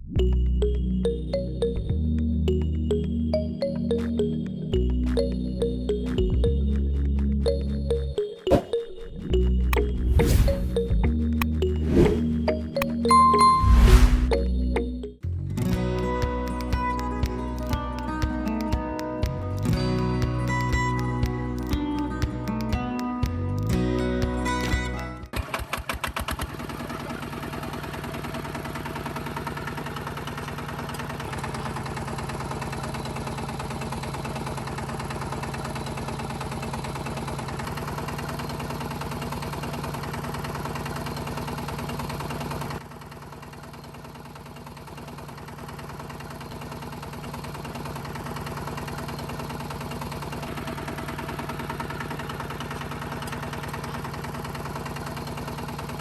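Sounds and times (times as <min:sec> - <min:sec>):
small motor rattling: 0:25.3 - 0:56.0.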